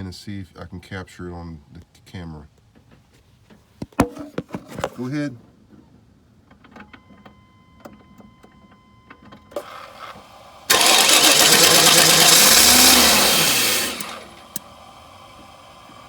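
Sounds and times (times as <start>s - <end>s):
engine cranking and stalling: 9.6s - 16.0s.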